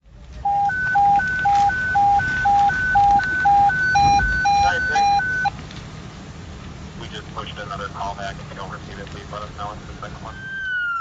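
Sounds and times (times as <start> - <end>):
alternating high and low beeps: 0.4 - 5.5.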